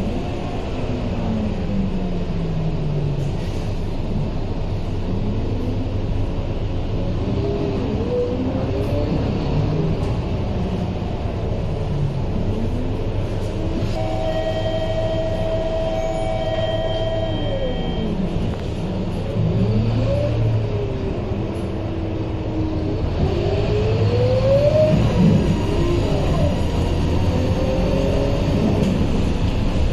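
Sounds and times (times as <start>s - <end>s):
bus engine rumble: 0.0s - 29.9s
whining tone: 13.8s - 19.0s.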